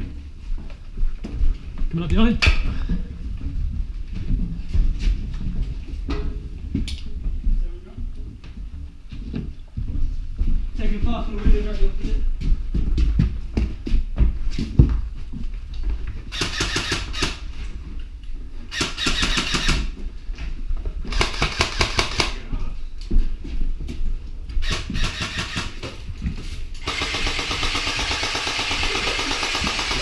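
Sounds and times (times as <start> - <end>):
airsoft guns firing bursts: 16.3 - 17.4, 18.7 - 19.9, 21.1 - 22.4, 24.6 - 25.8, 26.8 - 30.0.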